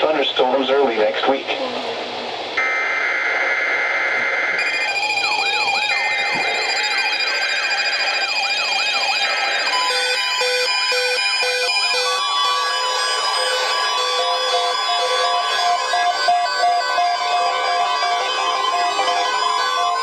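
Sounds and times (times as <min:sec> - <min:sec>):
alert data bursts: 0:02.6 - 0:20.0
warbling electronic alert tones: 0:03.6 - 0:20.0
electronic beeping tones: 0:04.0 - 0:20.0.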